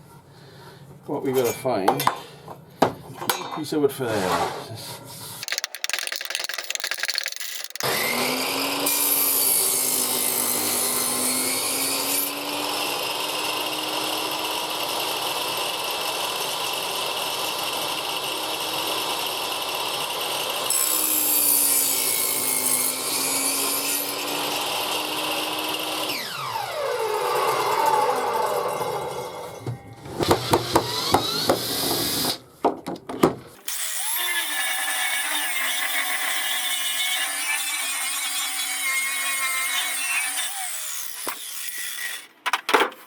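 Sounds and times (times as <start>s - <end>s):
saw cutting through wood: 5.3s - 29.6s, 30.2s - 32.4s, 33.6s - 42.3s
table saw motor whining: 5.6s - 12.3s, 24.9s - 32.4s.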